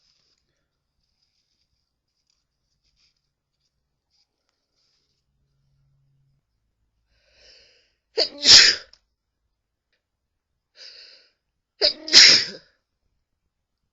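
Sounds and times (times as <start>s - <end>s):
person sneezing: 8.2s - 8.9s, 11.8s - 12.7s.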